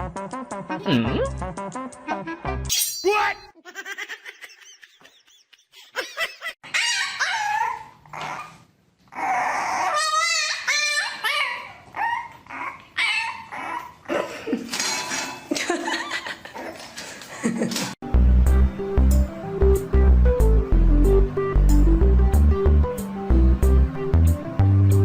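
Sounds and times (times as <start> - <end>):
dog barking and whining: 6.6 - 14.0.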